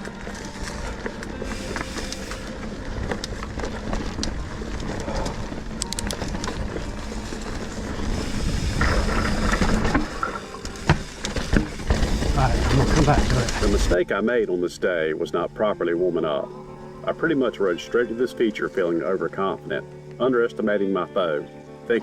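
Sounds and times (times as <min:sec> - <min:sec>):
rattles and clicks: 0:00.0 - 0:14.0
bike rolling over dirt trail: 0:00.0 - 0:14.2.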